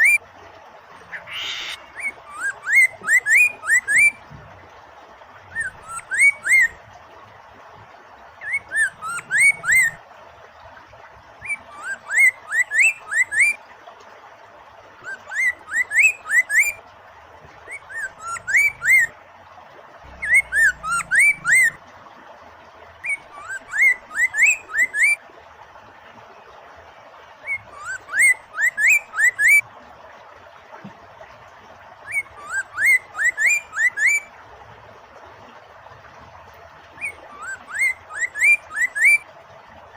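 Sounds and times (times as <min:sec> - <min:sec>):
flowing water hiss: 0:00.0 - 0:39.9
bird singing upslurred whistles: 0:01.1 - 0:04.2, 0:05.5 - 0:06.8, 0:08.4 - 0:10.0, 0:11.4 - 0:13.6, 0:15.1 - 0:16.8, 0:17.7 - 0:19.1, 0:20.2 - 0:21.8, 0:23.0 - 0:25.2, 0:27.5 - 0:29.6, 0:32.1 - 0:34.3, 0:37.0 - 0:39.2.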